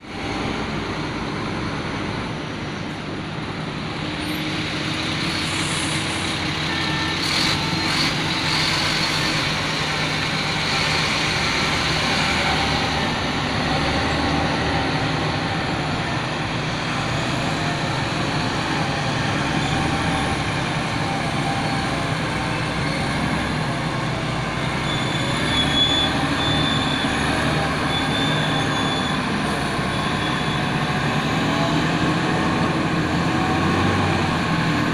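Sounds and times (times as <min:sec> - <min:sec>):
heavy diesel machinery running: 0:00.0 - 0:34.9
thin high squeal: 0:24.7 - 0:30.8.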